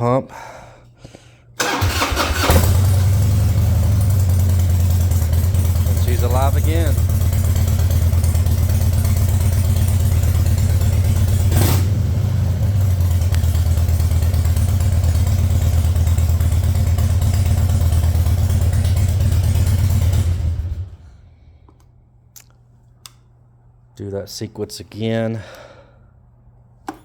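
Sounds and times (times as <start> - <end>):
motorcycle engine idling: 1.6 - 21.3.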